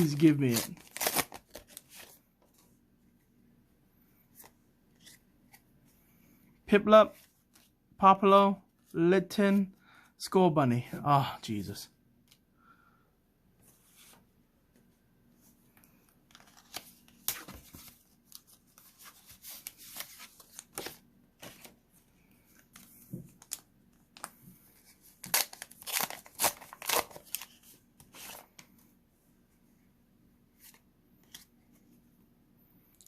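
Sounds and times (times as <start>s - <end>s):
cards being handled: 0.0s - 2.7s, 15.8s - 21.8s
wrapper tearing and crinkling: 0.1s - 1.8s, 25.2s - 27.6s.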